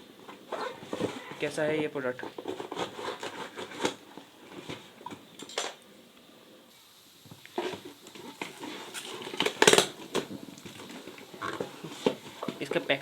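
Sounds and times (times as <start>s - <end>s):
knife scraping plastic wrapping: 0.3s - 5.0s, 7.6s - 13.0s.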